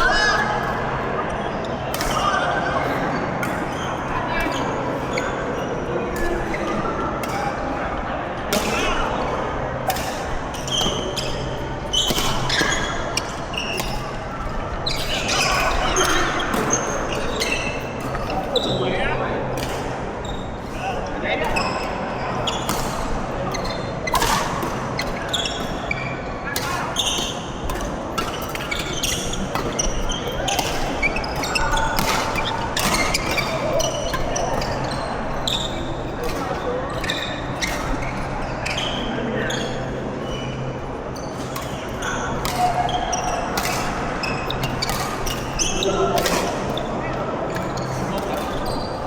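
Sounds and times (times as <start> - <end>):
shoes squeaking on court floor: 10.6 - 18.8, 21.4 - 49.0
rackets hitting shuttlecock: 26.6 - 36.8, 41.5 - 46.9
racket striking shuttlecock: 32.0 - 33.5.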